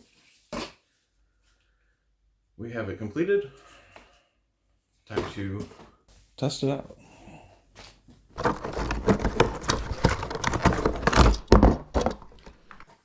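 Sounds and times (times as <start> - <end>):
plastic parts clattering: 8.4 - 13.0.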